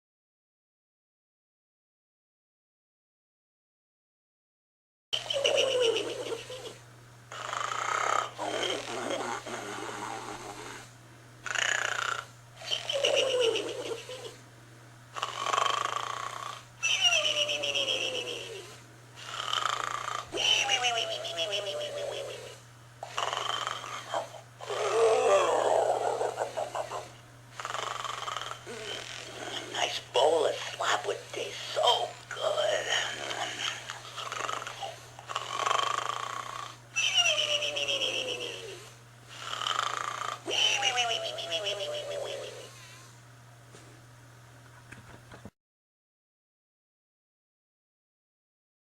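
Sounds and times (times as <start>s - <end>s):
pig snoring: 5.2s - 14.4s, 15.1s - 43.2s
faint low hum: 5.2s - 45.5s.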